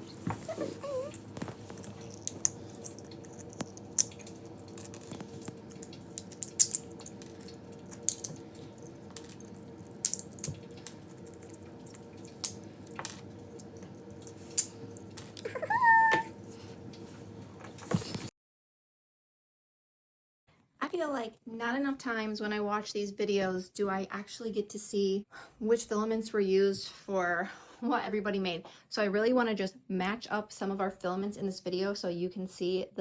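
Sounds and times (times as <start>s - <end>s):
steady low hum: 0.0s - 18.3s
high-pitched call: 15.5s - 16.3s.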